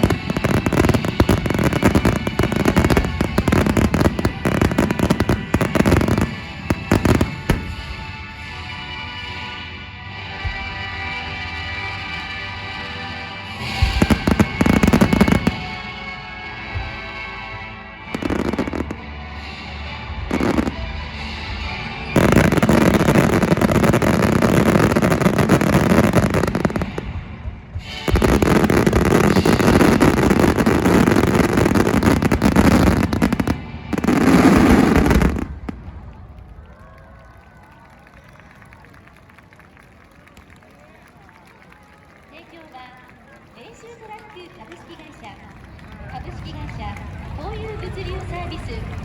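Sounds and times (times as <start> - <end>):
fireworks crackling: 0.0 - 9.6, 12.1 - 16.2, 18.1 - 19.0, 20.3 - 20.9, 21.8 - 49.0
music playing: 0.0 - 36.0.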